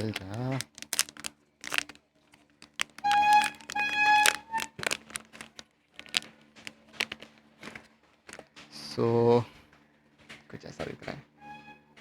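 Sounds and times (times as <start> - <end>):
packaging rustles: 0.0 - 8.6.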